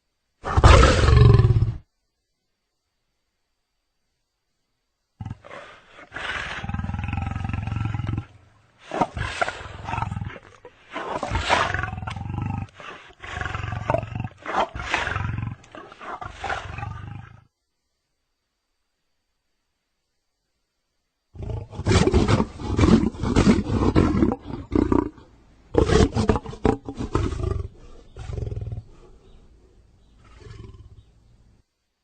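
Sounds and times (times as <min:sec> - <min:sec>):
lion growling and roaring: 0:05.2 - 0:17.5, 0:21.4 - 0:31.1.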